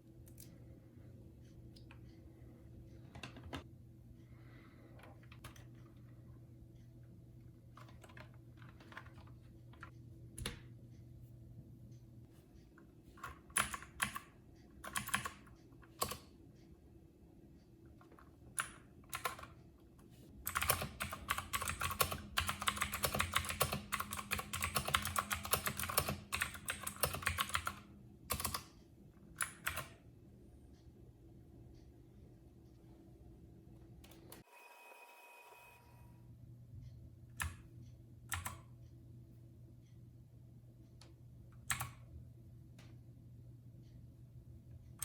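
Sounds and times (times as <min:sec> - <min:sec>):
clicky mechanical keyboard typing: 0:05.1 - 0:06.0, 0:07.7 - 0:10.7, 0:13.2 - 0:16.3, 0:18.0 - 0:19.6, 0:20.4 - 0:28.8, 0:29.4 - 0:30.0, 0:38.3 - 0:38.7, 0:41.6 - 0:42.1.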